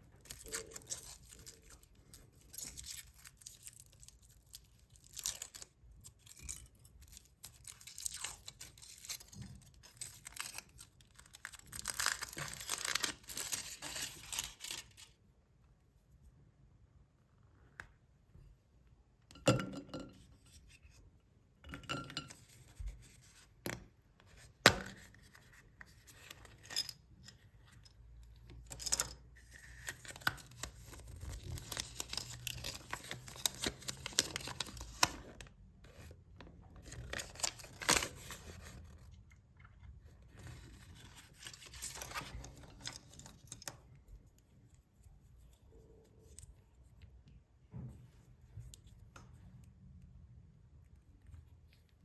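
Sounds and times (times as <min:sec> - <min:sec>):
foil wrappers crinkling and tearing: 0:00.2 - 0:15.2, 0:29.6 - 0:35.2.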